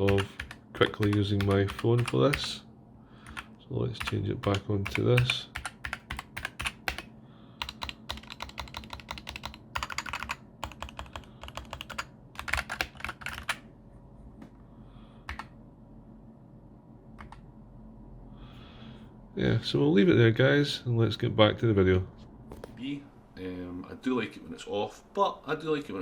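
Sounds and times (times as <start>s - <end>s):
mechanical keyboard typing: 0.0s - 2.6s, 3.3s - 13.6s, 15.3s - 15.5s.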